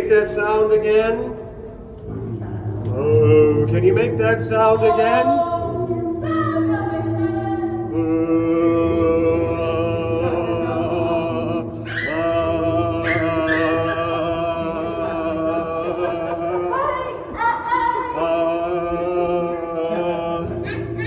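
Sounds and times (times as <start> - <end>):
low sustained singing note: 2.2 - 16.1
higher shifting vocal line: 4.7 - 21.0.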